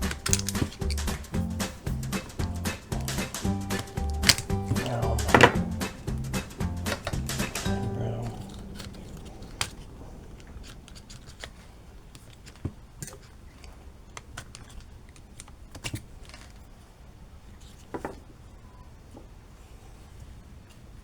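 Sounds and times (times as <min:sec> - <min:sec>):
small plastic parts clicking: 0:00.0 - 0:16.8.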